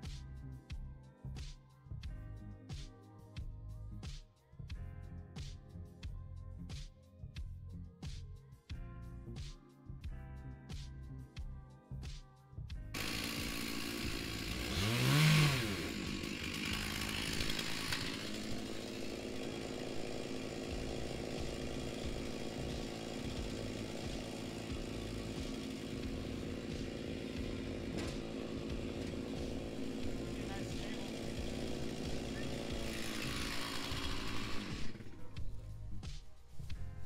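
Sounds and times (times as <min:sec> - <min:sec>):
chainsaw running and revving: 0:12.9 - 0:36.0.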